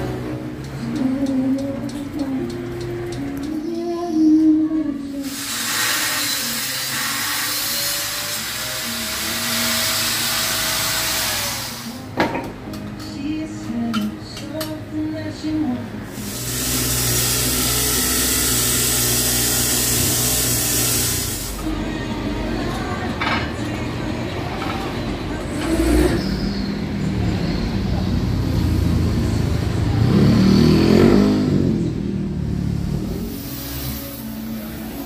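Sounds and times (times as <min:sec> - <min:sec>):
loud hiss: 0:05.2 - 0:12.1, 0:16.1 - 0:21.6, 0:33.1 - 0:35.0
motorcycle engine revving: 0:25.6 - 0:34.9.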